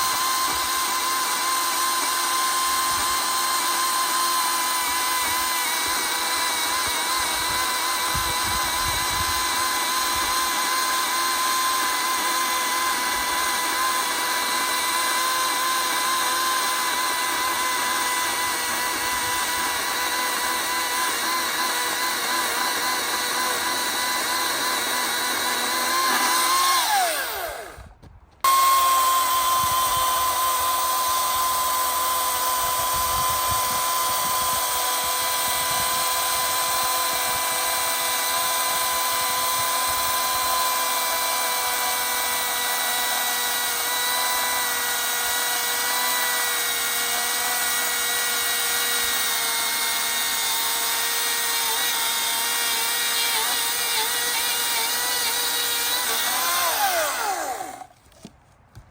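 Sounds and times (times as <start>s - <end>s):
chainsaw running high whine: 0.0s - 58.2s.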